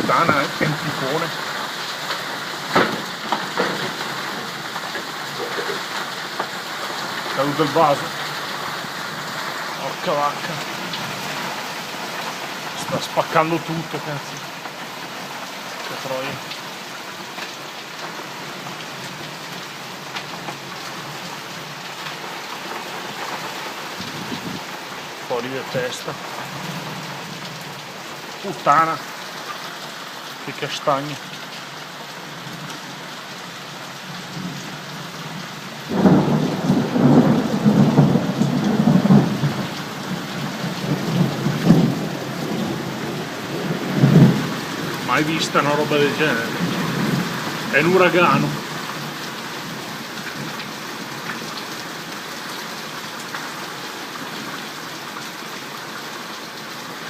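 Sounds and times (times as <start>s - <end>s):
torrential rain pouring: 0.0s - 57.0s
thunder rumble: 35.9s - 45.6s.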